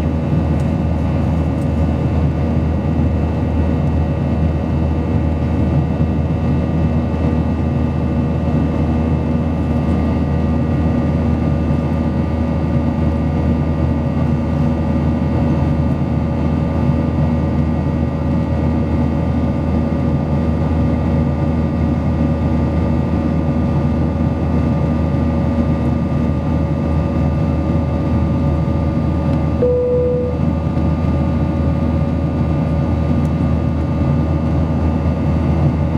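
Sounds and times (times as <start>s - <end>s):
jet engine drone and whine: 0.0s - 35.9s
single electronic tone: 29.6s - 30.6s.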